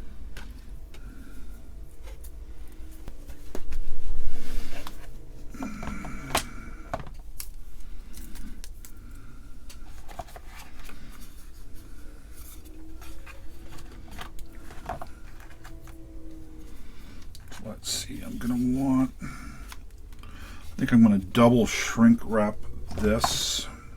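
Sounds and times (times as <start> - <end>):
handling of parts: 9.6 - 17.7.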